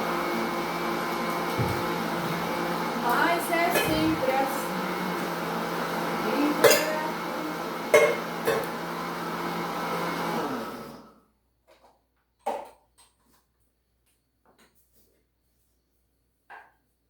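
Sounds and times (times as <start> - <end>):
blender running: 0.0 - 11.2.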